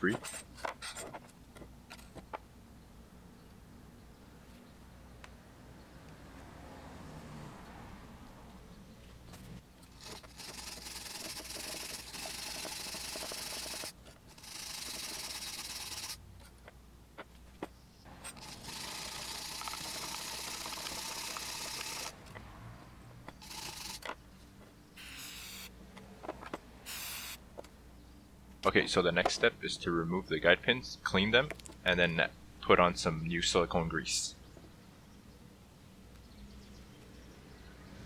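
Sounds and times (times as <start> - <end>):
wire brush scraping metal: 9.8 - 16.2.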